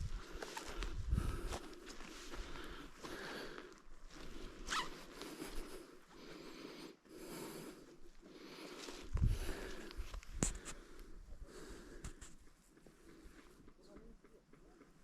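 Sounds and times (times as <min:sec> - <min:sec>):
rustling footsteps in forest: 0:00.0 - 0:06.4, 0:07.8 - 0:11.1.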